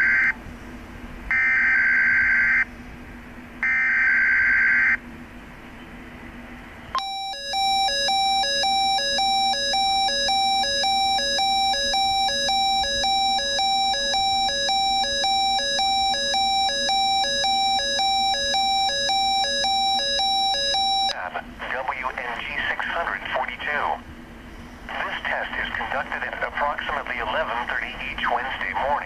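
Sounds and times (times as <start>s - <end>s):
two-tone electronic alarm warble: 0.0s - 0.4s, 1.3s - 2.7s, 3.6s - 5.0s, 7.0s - 21.2s.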